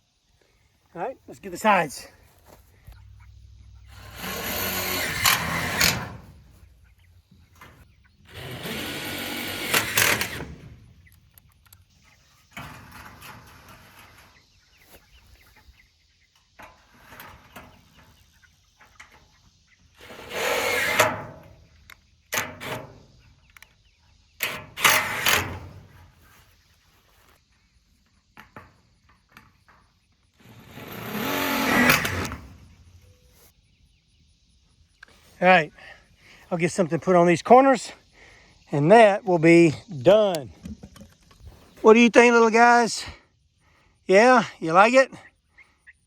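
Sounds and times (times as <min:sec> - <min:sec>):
power drill driving screws: 0:03.9 - 0:06.4, 0:08.3 - 0:10.8, 0:20.0 - 0:21.3, 0:24.4 - 0:25.6, 0:30.4 - 0:32.7.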